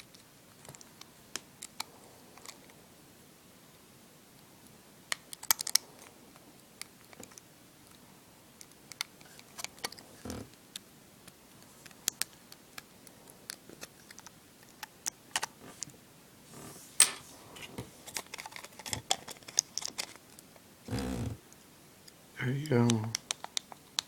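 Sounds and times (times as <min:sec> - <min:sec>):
small plastic and metal clicks: 0:05.1 - 0:05.8, 0:22.7 - 0:24.0.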